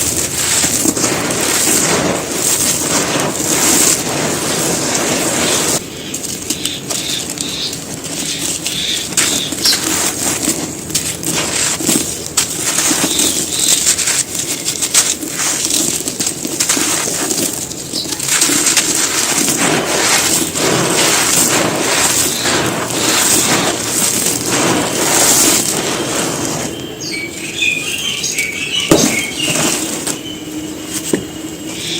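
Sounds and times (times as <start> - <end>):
cement crumbling and crunching: 0.0 - 31.9.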